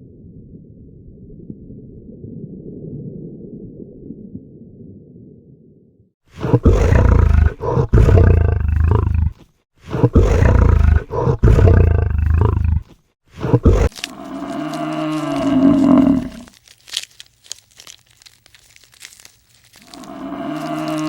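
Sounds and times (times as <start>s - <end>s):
large animal roaring: 6.4s - 16.5s, 19.8s - 21.0s
drawn-out pitched animal call: 13.8s - 16.6s, 19.6s - 21.0s.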